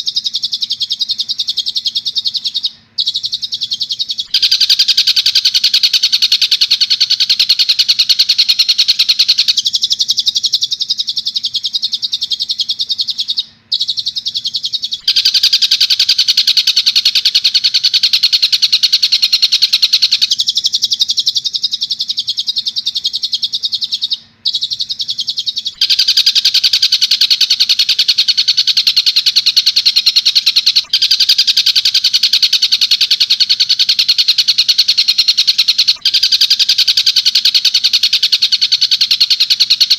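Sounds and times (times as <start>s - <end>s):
lower bird call: 0.0s - 39.9s
kingfisher rapid rattling call: 4.1s - 10.2s, 13.8s - 21.4s, 25.6s - 39.9s.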